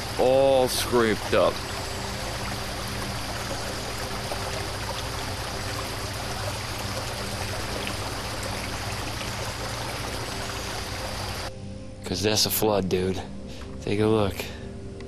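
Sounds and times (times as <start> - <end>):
floodwater rushing: 0.0 - 11.5.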